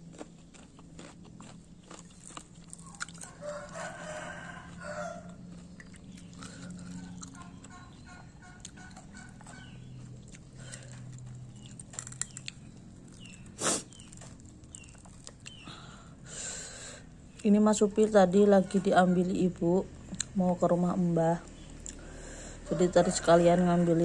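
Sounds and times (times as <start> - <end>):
chickens clucking: 2.8 - 11.1.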